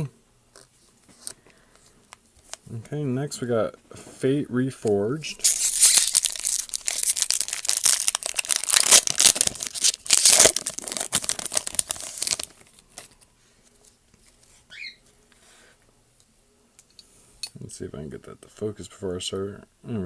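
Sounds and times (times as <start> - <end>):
wrapper tearing and crinkling: 5.4 - 13.2.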